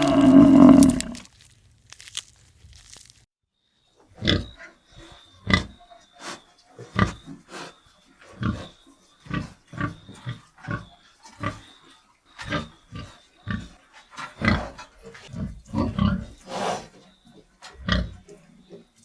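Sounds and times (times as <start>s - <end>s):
animal grunting: 0.0s - 1.3s.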